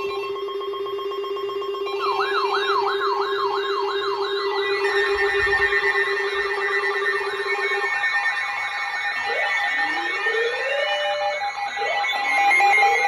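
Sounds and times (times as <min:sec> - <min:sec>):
siren-like warble: 0:00.0 - 0:13.0.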